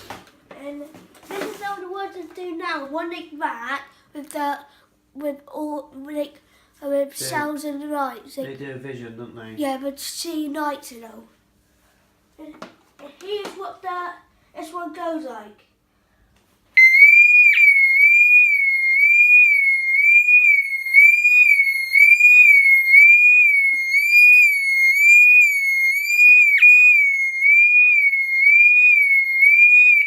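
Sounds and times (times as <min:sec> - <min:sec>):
electronic alarm siren: 0:16.8 - 0:30.0.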